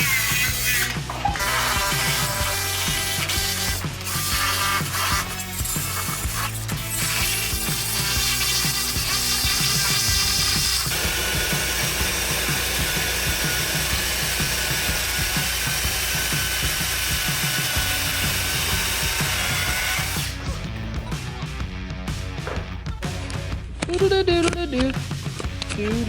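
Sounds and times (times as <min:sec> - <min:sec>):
power saw cutting wood: 0:00.0 - 0:20.4.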